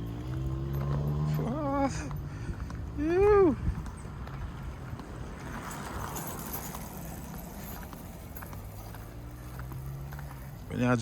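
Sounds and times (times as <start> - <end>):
footsteps on a road: 0.0 - 11.0.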